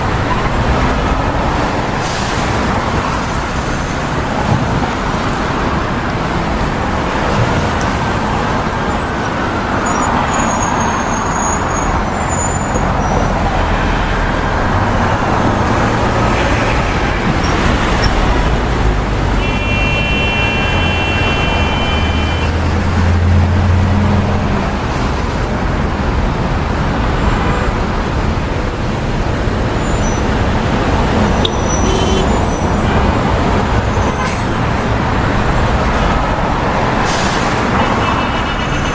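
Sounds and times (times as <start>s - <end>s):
cars passing: 0.0s - 38.9s
heavy vehicle engine rumble: 0.0s - 38.9s
high-pitched tone: 19.4s - 22.6s.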